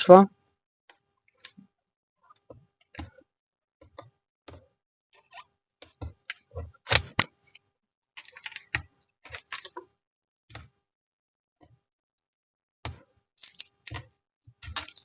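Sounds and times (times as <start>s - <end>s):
clicks and knocks from handling objects: 2.3s - 7.6s, 8.2s - 9.9s, 12.9s - 15.0s.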